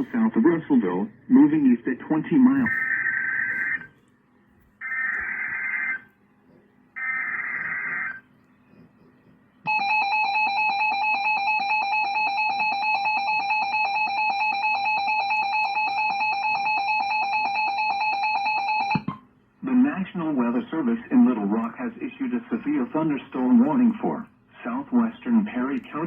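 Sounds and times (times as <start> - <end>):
warbling digital data bursts: 4.8 - 6.1, 7.0 - 9.0.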